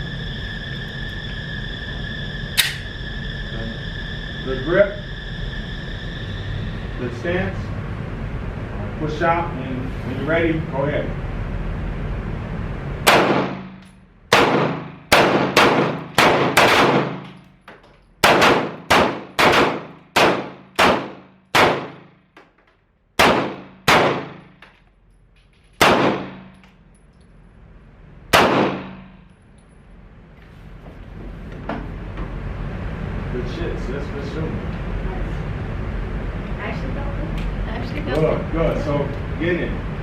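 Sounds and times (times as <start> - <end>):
handgun shots echoing: 13.1 - 17.5, 18.2 - 22.1, 23.2 - 24.8, 25.8 - 26.6, 28.3 - 29.2.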